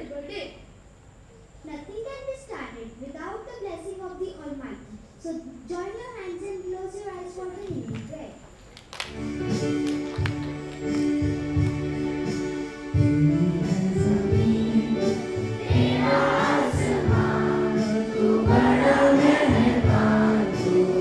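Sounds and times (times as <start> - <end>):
instrumental accompaniment with beat: 9.0 - 21.0
group singing in unison: 13.6 - 21.0.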